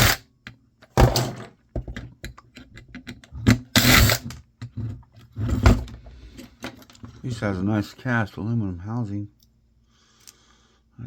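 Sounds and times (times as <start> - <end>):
screwdriver and parts clicking: 1.8 - 4.8.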